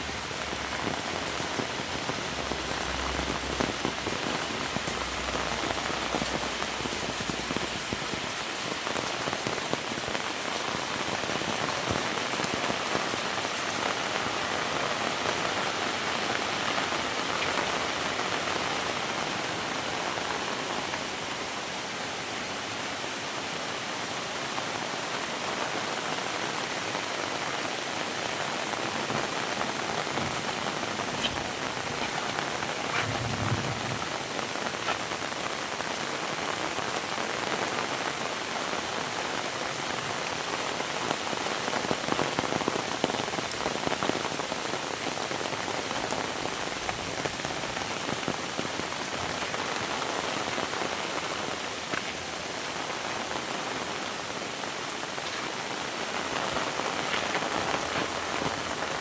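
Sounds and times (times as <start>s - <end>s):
heavy rain hissing: 0.0s - 59.0s
low rumble: 31.2s - 34.2s.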